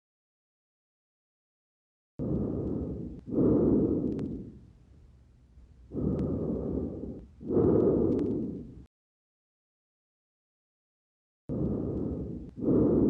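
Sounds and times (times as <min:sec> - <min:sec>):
breath sounds through stethoscope: 0:02.2 - 0:04.8, 0:05.8 - 0:08.9, 0:11.5 - 0:13.0.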